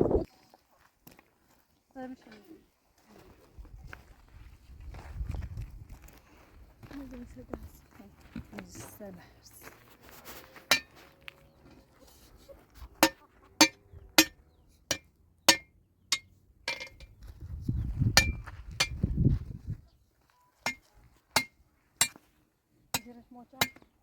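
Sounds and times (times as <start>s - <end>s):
low rumble: 0.0s - 0.3s.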